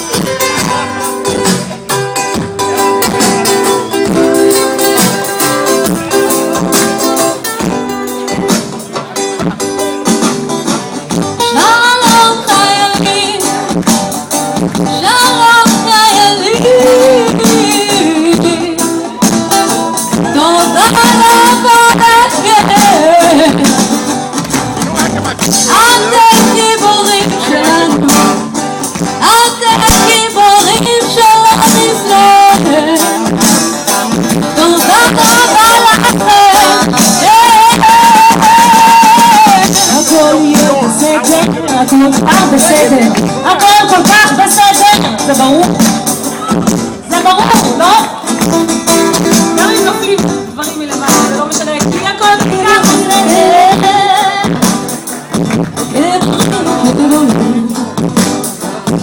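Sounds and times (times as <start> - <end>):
guitar accompaniment: 0.0 - 59.0
live reggae band playing: 0.0 - 59.0
person singing: 14.7 - 24.3, 25.0 - 59.0.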